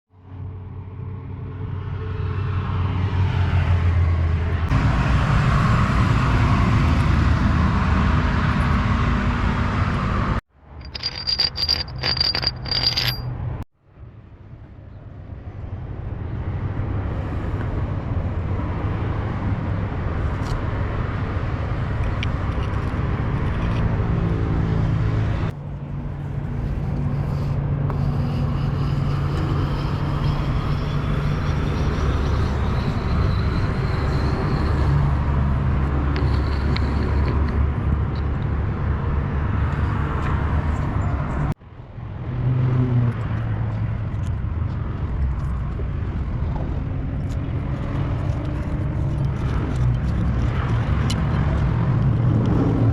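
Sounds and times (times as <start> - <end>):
heavy engine humming: 25.6 - 40.8.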